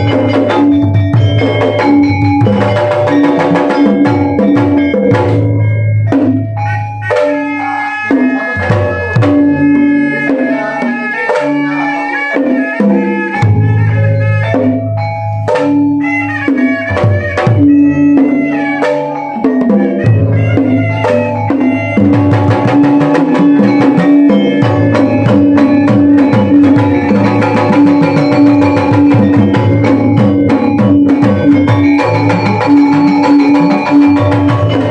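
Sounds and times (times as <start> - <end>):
low ringing tone: 0.0 - 12.3, 13.4 - 16.8, 17.4 - 34.9
struck metallophone notes: 0.0 - 34.9
hand drum strokes: 15.4 - 34.9.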